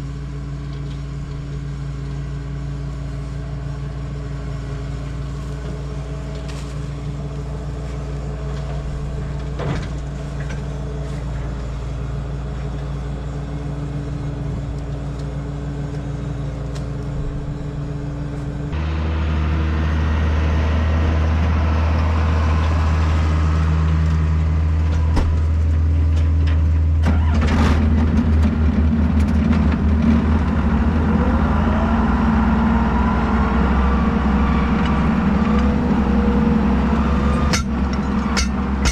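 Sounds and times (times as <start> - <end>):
tractor engine running: 0.0 - 38.9
rising whine: 29.7 - 38.9.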